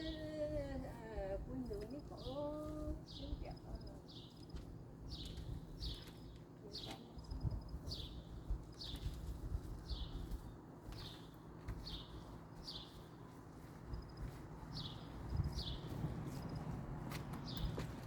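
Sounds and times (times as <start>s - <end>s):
low background rumble: 0.0s - 18.0s
small bird chirping: 1.7s - 13.1s, 13.9s - 16.5s.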